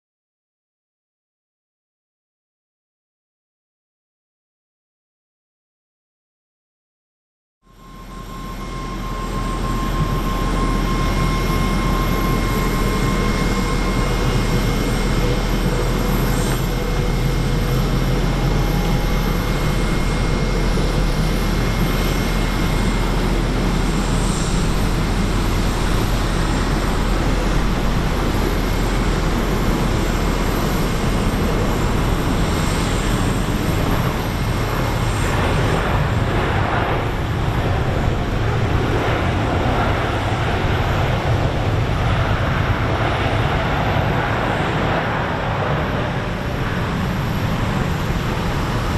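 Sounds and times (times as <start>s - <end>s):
faint engine whine: 7.6s - 48.9s
jet engine roar: 7.7s - 48.9s.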